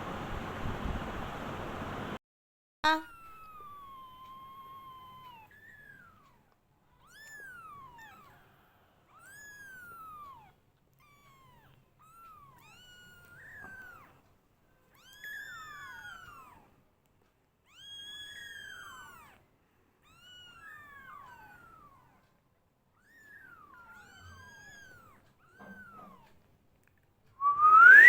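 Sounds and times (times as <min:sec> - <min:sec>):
kittens mewing: 0:23.0 - 0:26.4.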